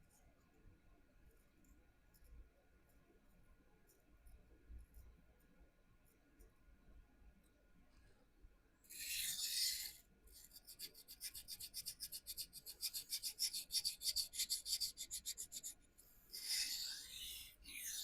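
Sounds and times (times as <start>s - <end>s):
knife scraping on sharpening stone: 16.4s - 18.0s.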